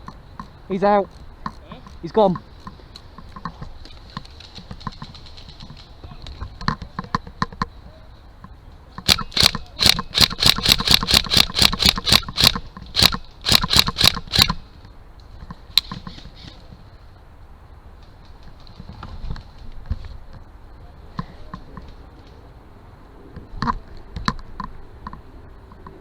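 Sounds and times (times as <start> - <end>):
airsoft rifle shots: 9.0 - 14.6.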